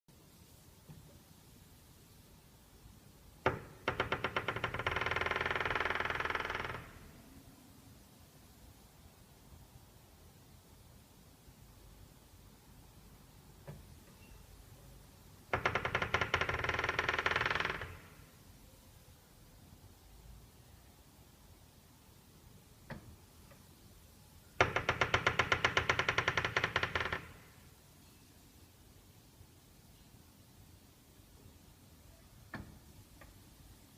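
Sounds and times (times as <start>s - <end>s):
door creaking: 3.4s - 7.2s, 15.5s - 18.4s, 24.6s - 27.7s, 32.5s - 33.3s.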